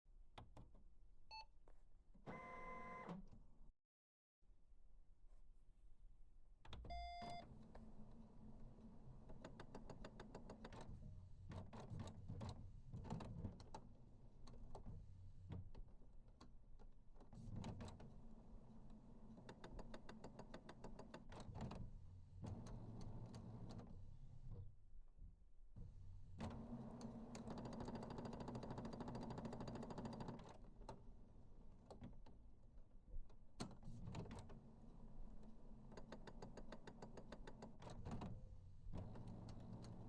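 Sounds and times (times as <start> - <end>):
printer electronic beep: 6.9 - 7.4
printer motors whirring: 39.0 - 40.0.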